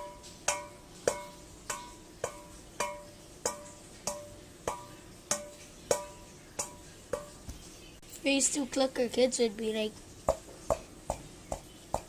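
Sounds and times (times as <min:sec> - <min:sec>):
wood block percussion beat: 0:10.3 - 0:12.0.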